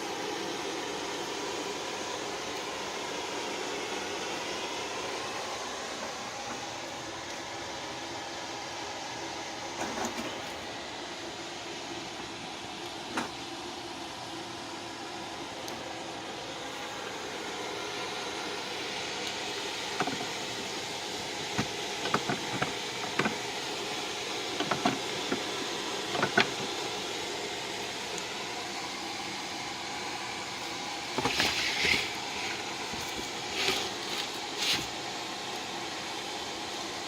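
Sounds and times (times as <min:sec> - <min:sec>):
drill press motor running: 0:29.7 - 0:35.0.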